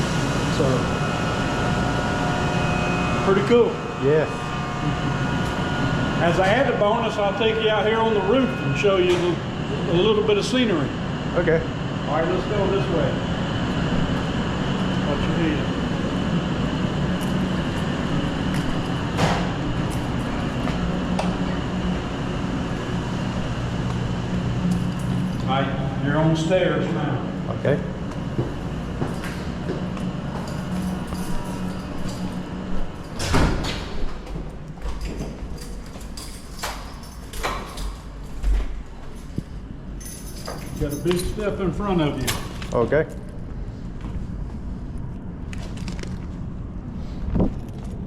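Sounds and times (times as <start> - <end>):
high whine: 0.0 - 37.8
machinery drone: 0.0 - 48.0
footsteps climbing stairs: 28.0 - 41.4.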